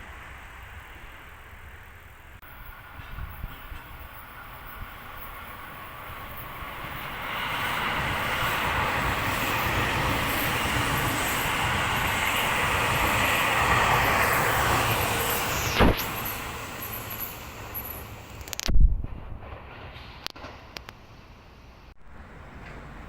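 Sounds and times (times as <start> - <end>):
electric train passing: 0.0 - 18.6, 19.3 - 23.0.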